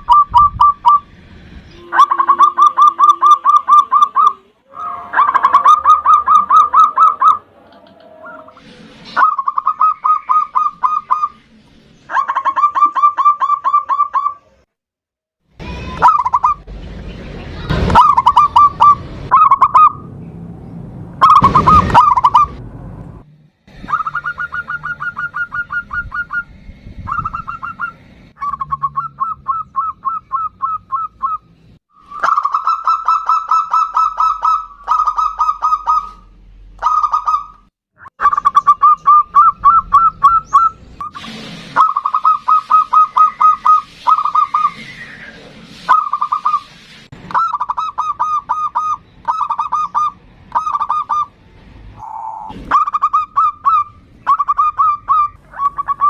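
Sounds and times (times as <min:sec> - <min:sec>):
dove cooing: 0:01.8 - 0:08.6, 0:23.8 - 0:26.5, 0:52.0 - 0:56.0
rough bird call bursts: 0:32.0 - 0:51.3.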